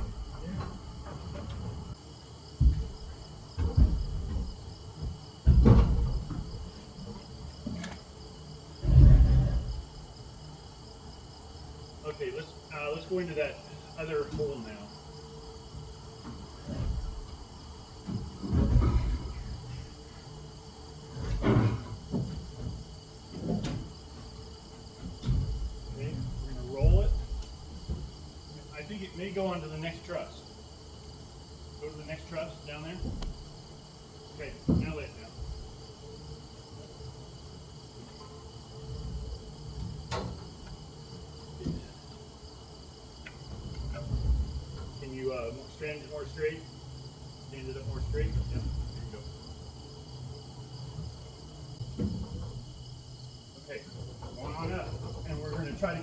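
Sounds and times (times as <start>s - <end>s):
dull thump: 0.0s - 8.1s, 15.7s - 28.5s, 32.3s - 37.1s, 47.7s - 53.2s
insects chirring: 0.0s - 56.0s
wooden rafter knocking: 2.6s - 8.0s, 21.1s - 28.4s.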